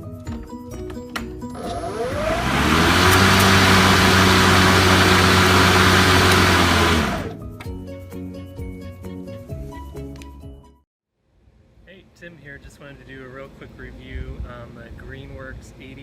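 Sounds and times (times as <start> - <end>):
lawn mower motor whine: 1.5 - 7.4
air rushing from mower blade: 1.6 - 7.4.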